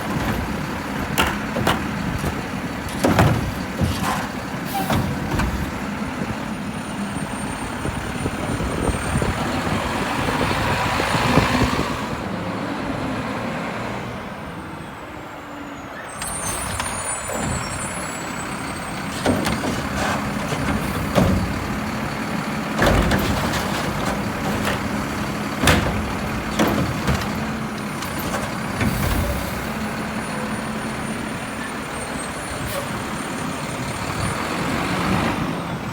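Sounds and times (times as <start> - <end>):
sharp knocks and clatters: 0.0 - 5.9, 19.0 - 29.8
garbage truck running: 0.0 - 35.9.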